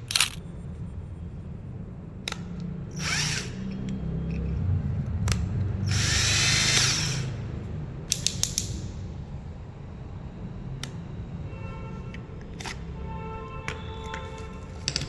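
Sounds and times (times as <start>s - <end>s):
electric drill motor whine: 2.3s - 4.6s, 5.8s - 7.7s, 9.4s - 15.0s
sharp clicks: 8.1s - 9.0s.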